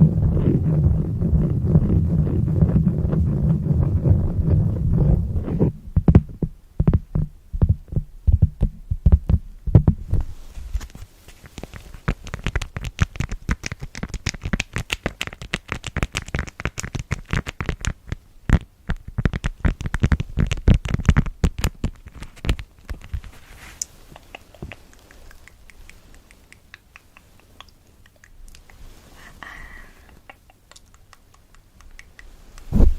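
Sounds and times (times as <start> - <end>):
low rubbing near microphone: 0.0 - 6.0, 10.0 - 12.0, 23.0 - 24.4, 32.3 - 32.9
fingertip tapping and scratching: 0.0 - 10.0, 10.8 - 28.8, 30.1 - 32.7.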